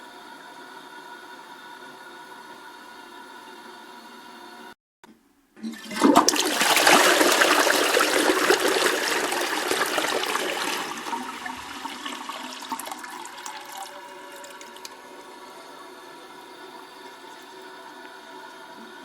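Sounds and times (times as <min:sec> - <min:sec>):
toilet flushing: 0:05.6 - 0:19.0.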